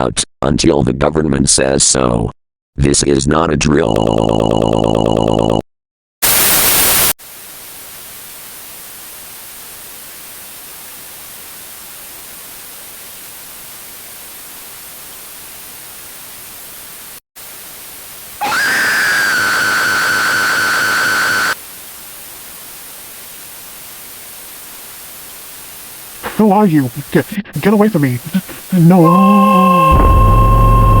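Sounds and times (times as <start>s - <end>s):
static hiss: 6.2s - 29.7s
high-pitched held tone: 18.4s - 21.6s.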